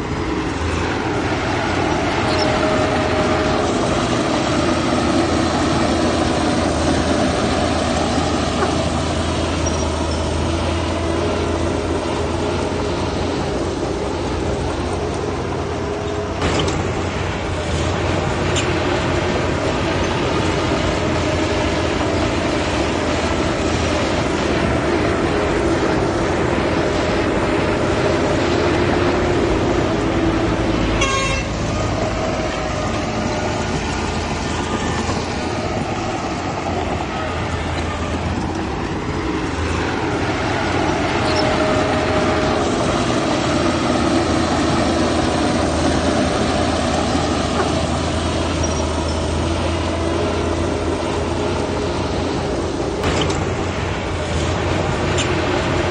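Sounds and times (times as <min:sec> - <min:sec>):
heavy diesel machinery running: 0:00.0 - 0:55.9
short horn toot: 0:31.0 - 0:31.6.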